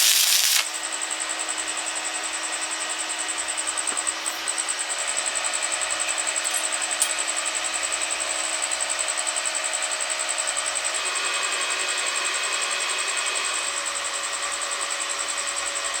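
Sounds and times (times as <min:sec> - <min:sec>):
welding arc sizzling: 0:00.0 - 0:00.8.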